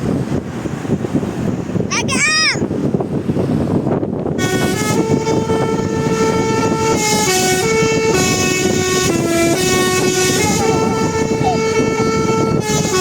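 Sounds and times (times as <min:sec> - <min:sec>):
bus horn playing a tune: 0:04.4 - 0:13.0
low rumble: 0:04.9 - 0:12.9.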